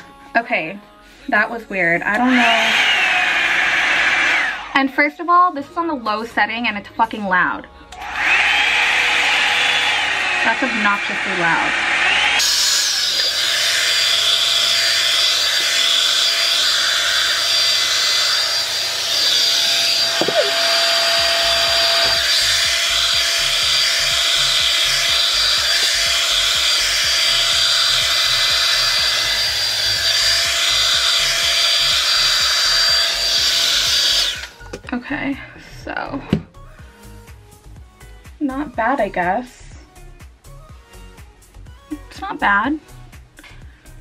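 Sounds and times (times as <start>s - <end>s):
hair dryer brush running: 2.2s - 4.8s, 7.9s - 34.8s.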